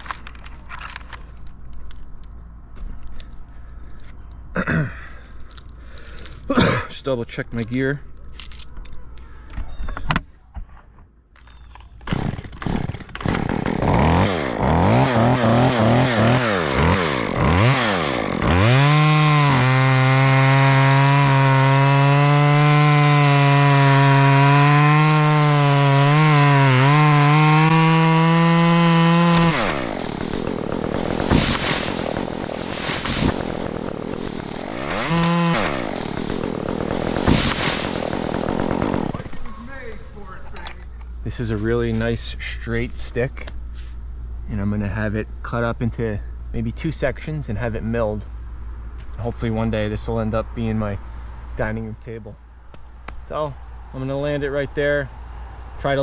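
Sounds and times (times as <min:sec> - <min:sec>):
chainsaw revving and cutting wood: 0:12.1 - 0:40.0.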